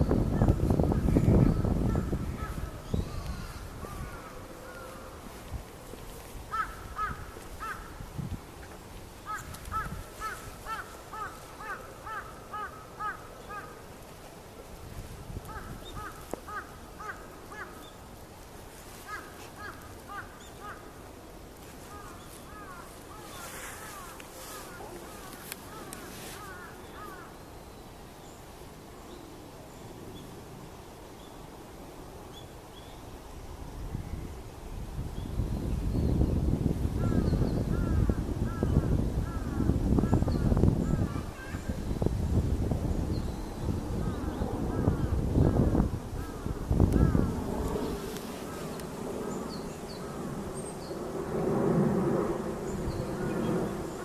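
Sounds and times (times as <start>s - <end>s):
crows cawing: 1.9s - 5.3s, 6.5s - 8.0s, 9.3s - 13.8s, 15.5s - 17.8s, 19.0s - 20.9s, 21.9s - 27.3s, 44.0s - 47.3s.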